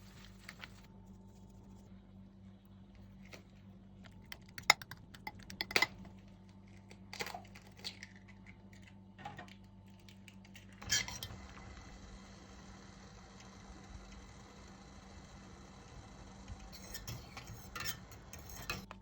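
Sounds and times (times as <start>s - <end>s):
utensils and dishes clinking: 16.8s - 19.0s.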